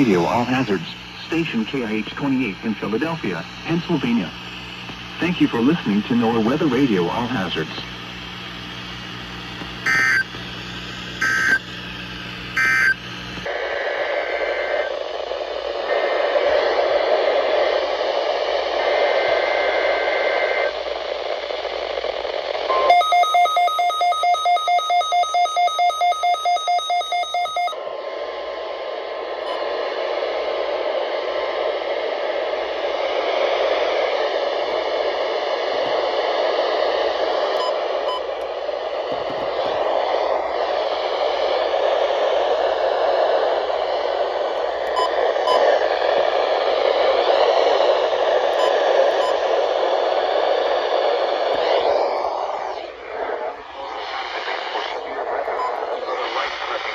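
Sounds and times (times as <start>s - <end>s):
radio static with faint whistle: 0.0s - 56.9s
rapid beeping: 9.8s - 10.3s, 12.6s - 13.0s, 22.7s - 27.8s, 44.6s - 45.9s, 48.5s - 49.5s, 53.8s - 56.9s
buzzy digital data bursts: 9.8s - 11.7s.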